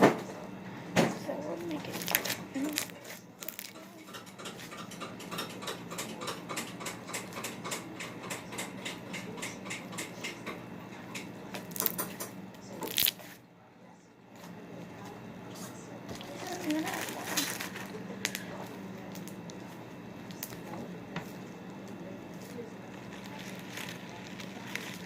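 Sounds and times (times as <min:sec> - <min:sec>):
slime snapping: 0:01.9 - 0:03.8, 0:11.6 - 0:12.1, 0:12.8 - 0:13.2
slime clicking and popping: 0:11.7 - 0:12.1.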